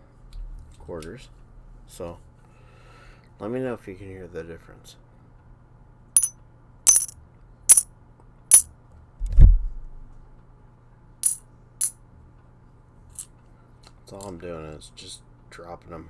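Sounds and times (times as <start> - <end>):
coins dropping and ringing: 6.9 - 7.1.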